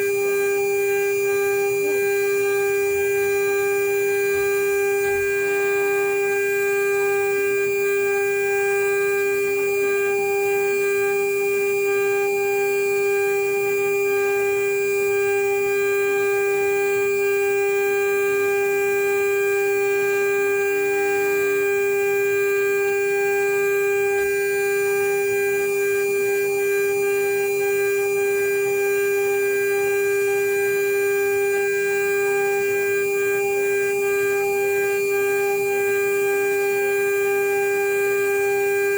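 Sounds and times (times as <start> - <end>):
router spindle whining: 1.8 - 8.1.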